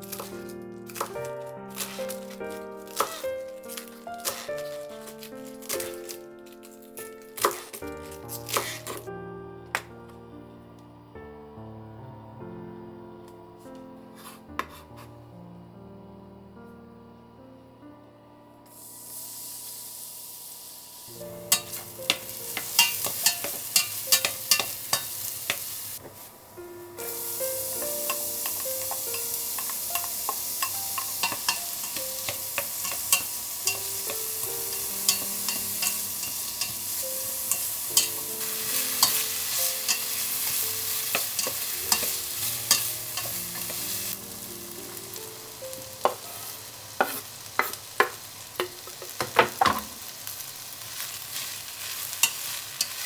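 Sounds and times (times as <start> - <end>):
vegetables sizzling in a pan: 0.0 - 9.1, 18.7 - 53.0
utensil clicking against pan: 21.5 - 25.7, 27.8 - 43.8.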